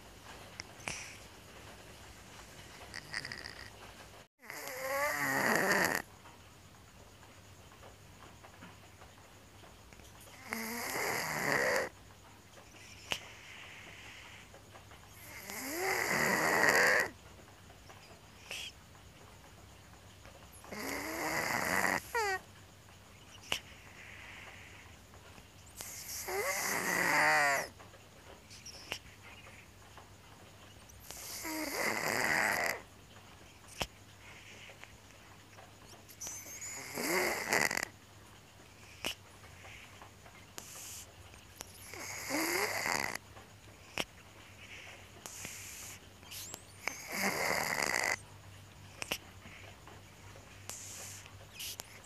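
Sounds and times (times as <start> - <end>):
cat snoring with whistling tone: 2.7 - 3.7, 4.4 - 6.1, 10.2 - 12.0, 15.1 - 17.2, 18.4 - 18.8, 20.7 - 22.4, 23.4 - 24.9, 25.7 - 27.8, 30.9 - 32.8, 36.1 - 38.0, 38.8 - 39.8, 40.6 - 43.2, 43.8 - 48.2, 48.9 - 49.6, 50.7 - 52.0.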